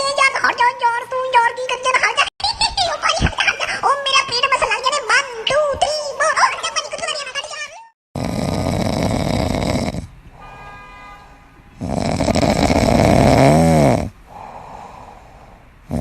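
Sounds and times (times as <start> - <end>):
loud snoring: 8.2 - 10.2, 11.8 - 15.1.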